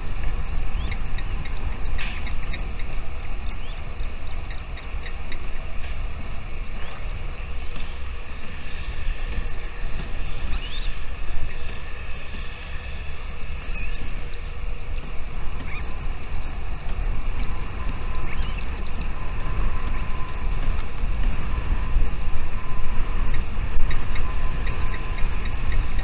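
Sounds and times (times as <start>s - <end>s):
whistled calls: 0.0s - 26.0s
wind rumbling on microphone: 0.0s - 26.0s
faint bird chirps: 0.4s - 9.0s, 9.6s - 20.6s.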